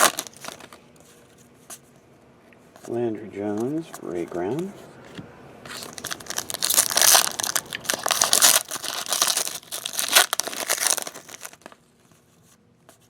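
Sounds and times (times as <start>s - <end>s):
plastic wrapper crinkling and tearing: 0.0s - 0.8s, 5.8s - 11.8s.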